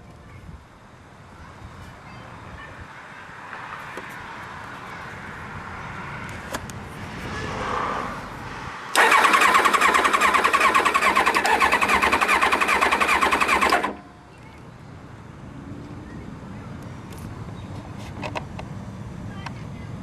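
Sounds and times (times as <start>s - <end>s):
electric starter cranking engine: 8.9s - 14.0s.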